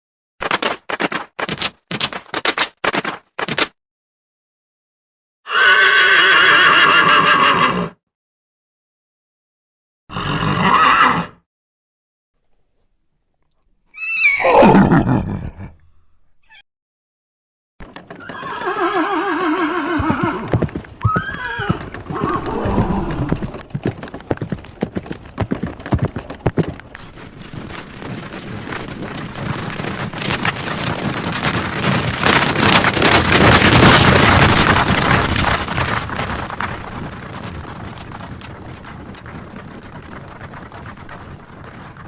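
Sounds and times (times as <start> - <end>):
hooves clopping: 0.4 - 3.7, 17.8 - 42.0
rush of hoofbeats: 0.4 - 3.7, 17.8 - 42.0
horse whinnying: 5.5 - 8.0, 10.1 - 11.4, 13.9 - 15.8, 18.1 - 23.6.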